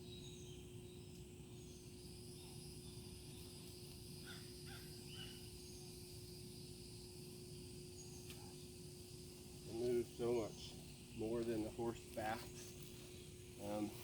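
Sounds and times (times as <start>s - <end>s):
steady hum: 0.0s - 14.0s
short bird calls: 4.2s - 5.9s.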